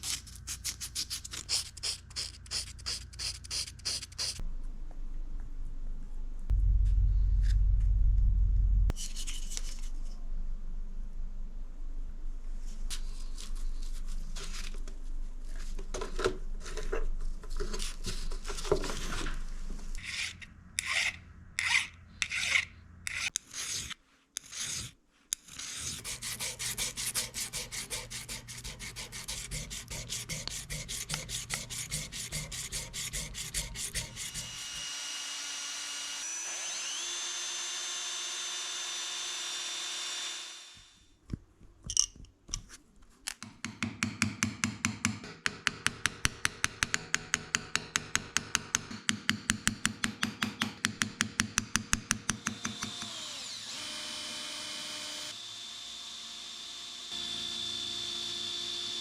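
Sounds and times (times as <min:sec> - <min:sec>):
hand filing strokes: 0:00.0 - 0:04.4, 0:20.0 - 0:34.9.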